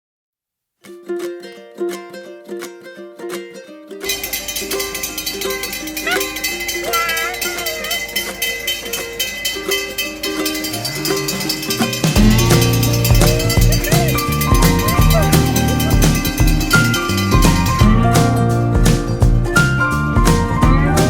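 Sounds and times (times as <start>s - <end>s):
plucked-string pop tune: 0.8s - 21.0s
bass line: 10.8s - 21.0s.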